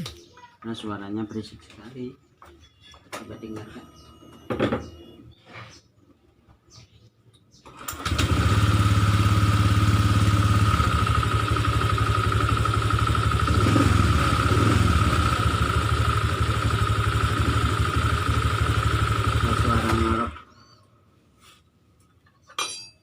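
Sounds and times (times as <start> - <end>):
scooter engine running: 7.8 - 20.4.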